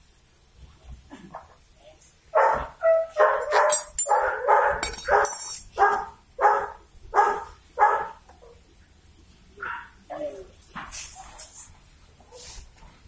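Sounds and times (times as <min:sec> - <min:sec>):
dog barking: 0:02.3 - 0:08.2, 0:09.6 - 0:10.0.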